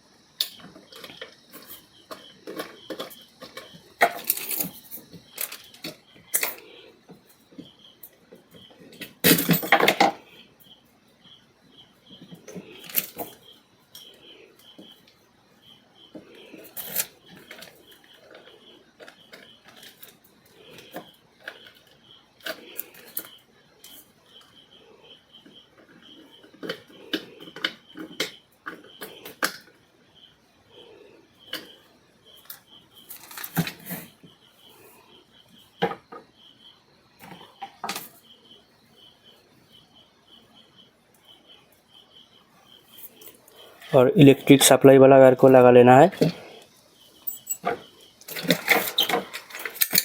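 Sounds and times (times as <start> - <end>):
screwdriver and wires clicking: 48.3 - 50.0.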